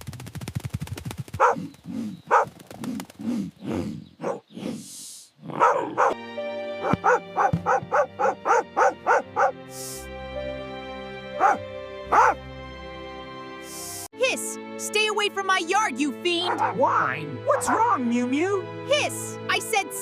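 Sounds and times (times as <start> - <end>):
dog barking and yipping: 1.4 - 1.7, 2.3 - 2.5, 4.2 - 4.5, 5.6 - 6.2, 6.8 - 9.6, 11.4 - 12.4, 16.4 - 17.8
background music: 5.5 - 20.0.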